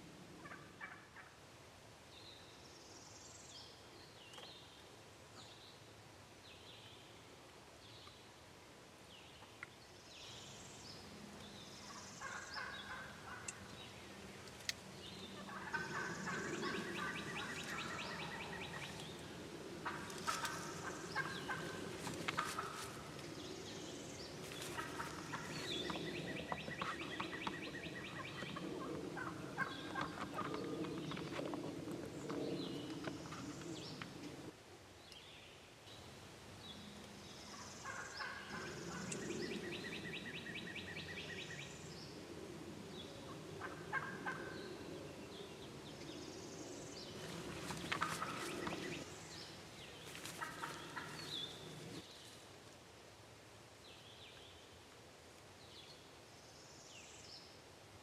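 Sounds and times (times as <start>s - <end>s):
turkeys gobbling: 12.2s - 13.6s, 15.4s - 19.0s, 19.8s - 23.1s, 24.6s - 30.6s, 37.8s - 39.2s, 43.3s - 44.6s, 47.6s - 49.1s, 50.2s - 52.0s.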